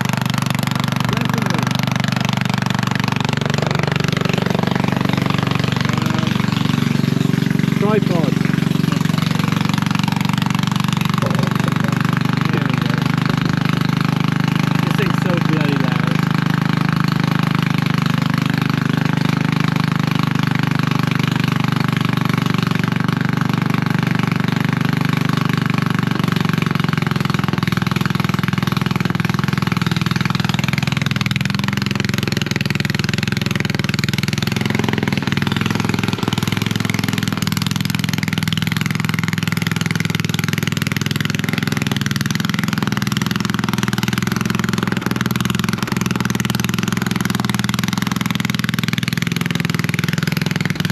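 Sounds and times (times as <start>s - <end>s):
lawn mower engine running: 0.0s - 50.9s.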